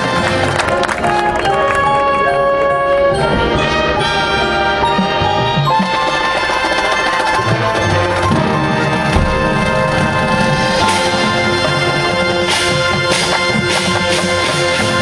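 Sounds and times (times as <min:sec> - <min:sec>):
brass section sustaining chords: 0:00.0 - 0:05.8, 0:07.6 - 0:15.0
drums: 0:03.2 - 0:15.0.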